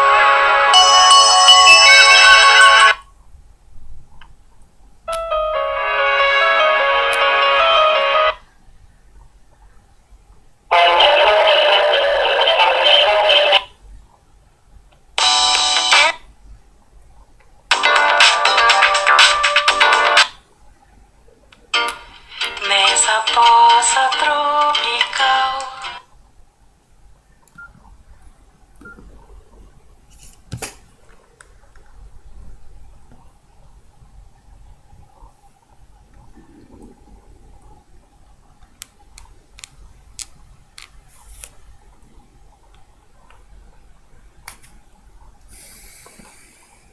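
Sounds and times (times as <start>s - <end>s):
phone ringtone tunes: 0.3s - 3.0s.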